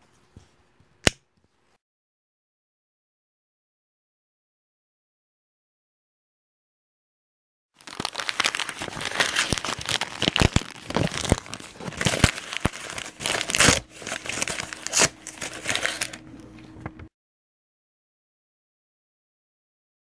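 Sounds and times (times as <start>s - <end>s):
crumpling and crinkling: 7.8s - 16.8s.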